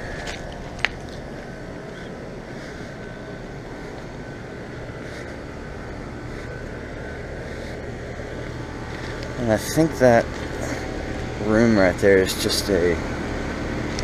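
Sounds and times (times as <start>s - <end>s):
air conditioner units humming: 0.0s - 14.0s.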